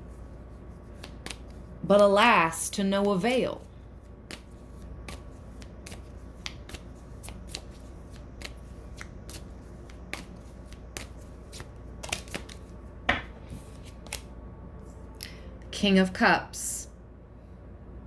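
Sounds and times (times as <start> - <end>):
cards being shuffled: 0.8 - 1.7, 3.0 - 14.3.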